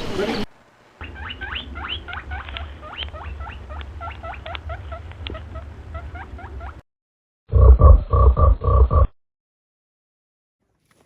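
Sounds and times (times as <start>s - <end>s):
low steady rumble: 0.6s - 6.8s
animal squeaking chirps: 1.0s - 6.8s.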